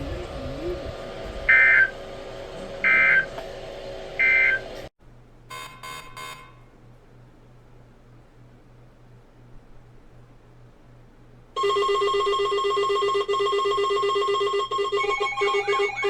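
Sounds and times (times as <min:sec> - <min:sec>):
low hum: 0:00.0 - 0:13.0
digital data burst squawks: 0:02.8 - 0:03.3, 0:04.2 - 0:04.6.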